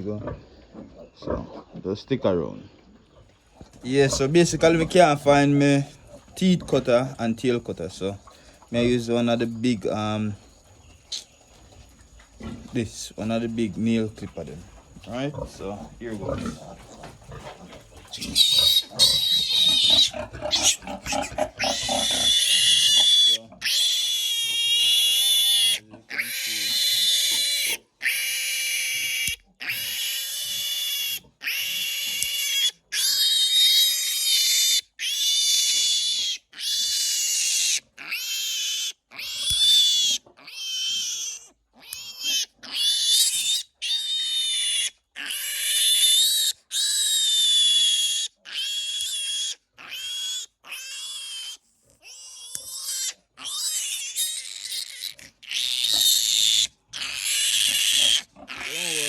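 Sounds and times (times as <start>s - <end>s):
piglet squealing: 18.1s - 59.0s.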